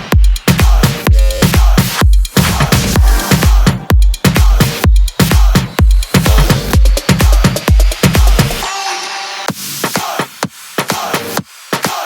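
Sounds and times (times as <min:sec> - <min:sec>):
heavy kick drum: 0:00.0 - 0:08.7
electronic dance-pop music: 0:00.0 - 0:12.0.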